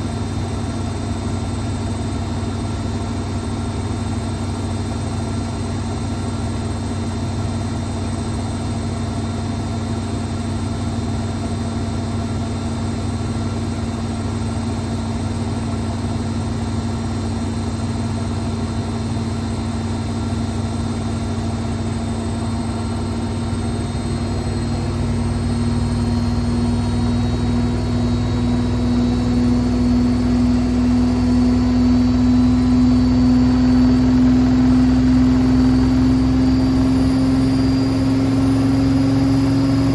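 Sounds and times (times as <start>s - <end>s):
washing machine spinning: 0.0s - 39.9s.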